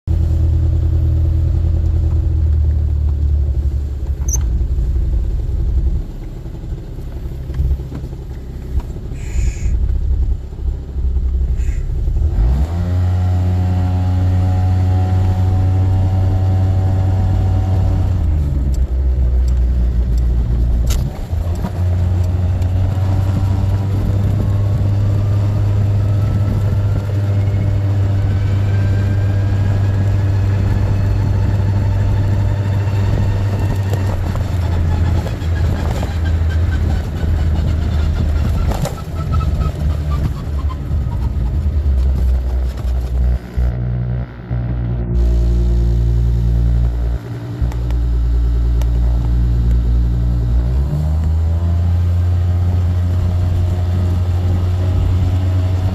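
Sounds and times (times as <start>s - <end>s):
scooter engine running: 20.4s - 50.3s
buzzing whine: 43.1s - 50.7s.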